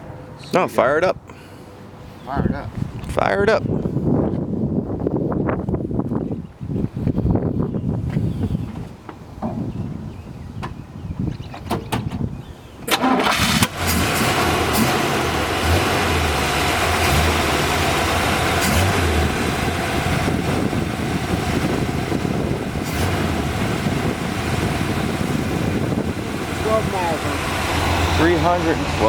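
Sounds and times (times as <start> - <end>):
car engine cranking on starter: 12.8 - 20.5
car engine idling: 12.9 - 29.0.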